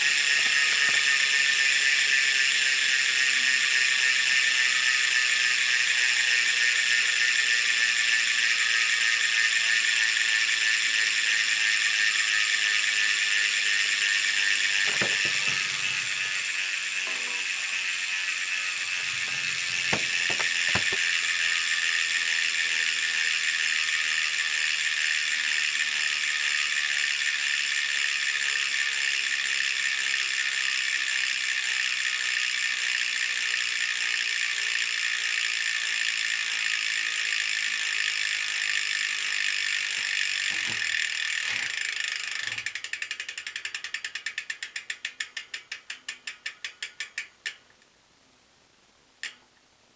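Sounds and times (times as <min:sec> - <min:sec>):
bike hub freewheel buzz: 0:00.0 - 0:47.6
knocks: 0:14.8 - 0:16.2, 0:19.0 - 0:21.1.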